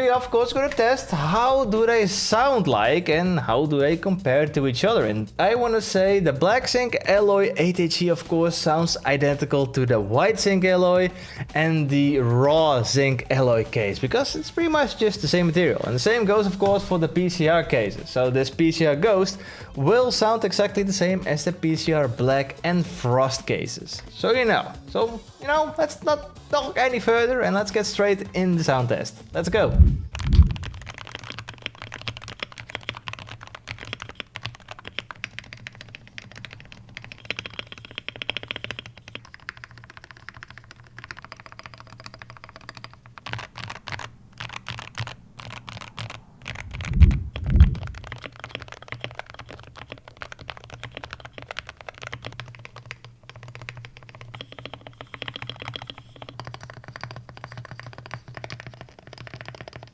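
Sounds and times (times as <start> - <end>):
dull thumps: 29.4 - 31.1, 46.5 - 48.3
mechanical keyboard key clicks: 30.2 - 59.9.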